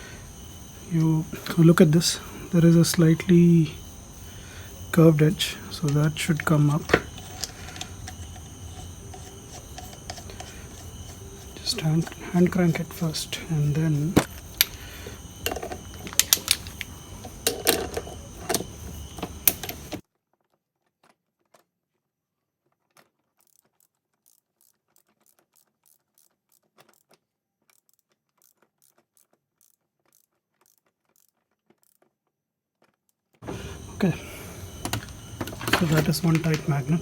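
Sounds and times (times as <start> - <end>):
metal hand tools clicking: 4.8 - 20.0.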